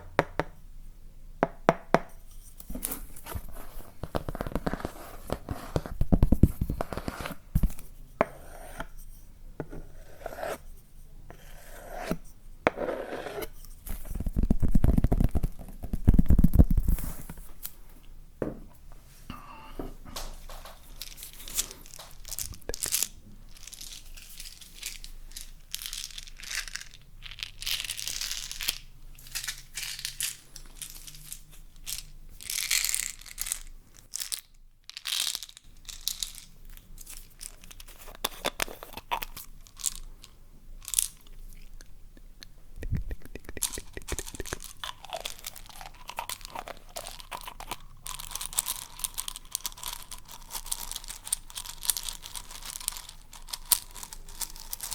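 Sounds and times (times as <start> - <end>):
hands crinkling papery material: 43.0 - 54.9.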